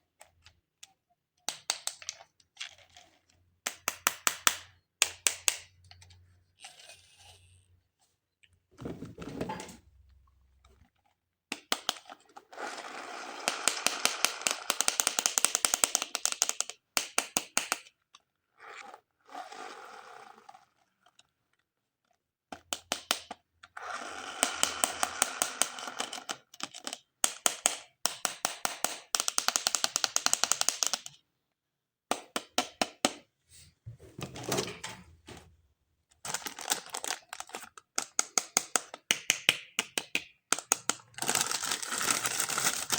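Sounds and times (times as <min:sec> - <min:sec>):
hands handling plastic toys: 0:33.9 - 0:42.9.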